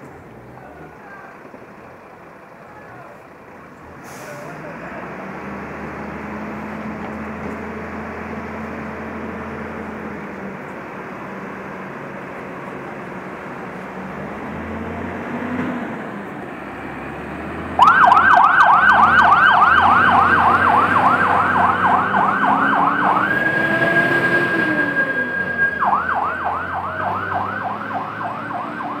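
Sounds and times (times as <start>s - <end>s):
truck engine rumble: 0.0s - 29.0s
fire engine siren yelping: 16.9s - 29.0s.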